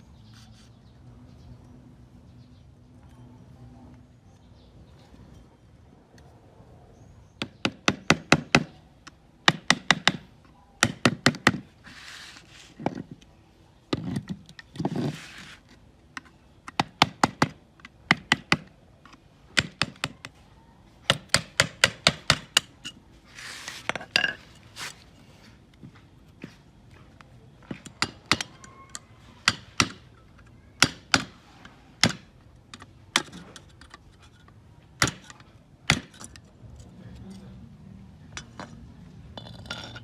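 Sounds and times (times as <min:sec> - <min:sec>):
hissing scrapes: 0:11.8 - 0:12.8, 0:14.9 - 0:15.8, 0:23.2 - 0:25.5.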